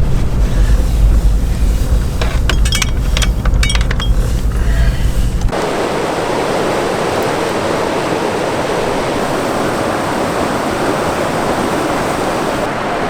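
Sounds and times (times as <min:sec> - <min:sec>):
fast-flowing stream water: 0:05.5 - 0:13.0.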